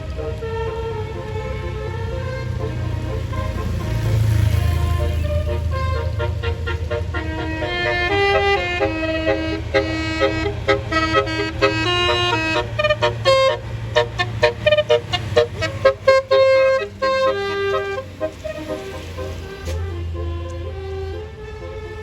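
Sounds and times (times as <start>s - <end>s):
bus horn melody: 0.0s - 22.0s
low engine hum: 0.0s - 22.0s.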